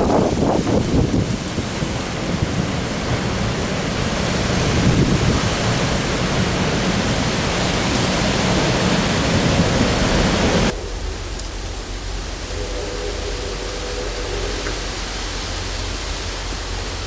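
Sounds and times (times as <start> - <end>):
strong storm wind rushing: 0.0 - 17.0
wind gusts on microphone: 0.0 - 17.0.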